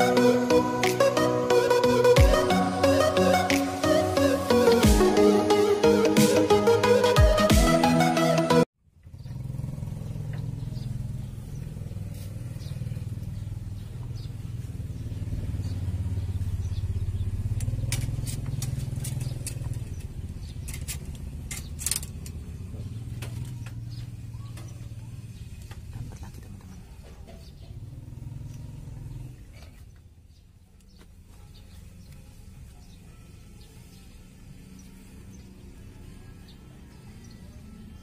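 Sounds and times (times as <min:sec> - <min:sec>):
motor engine humming: 0:00.0 - 0:30.0.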